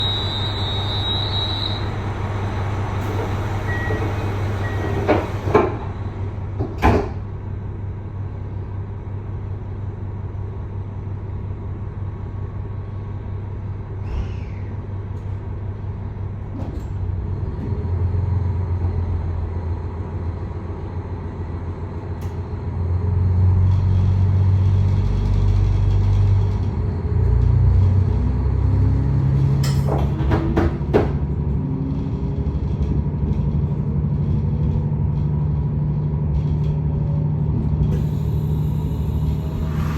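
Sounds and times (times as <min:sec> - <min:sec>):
train doors sliding shut: 0:00.0 - 0:07.3, 0:16.4 - 0:17.7, 0:29.4 - 0:31.3, 0:37.5 - 0:39.9
diesel railcar engine idling: 0:00.0 - 0:28.0, 0:29.3 - 0:39.9.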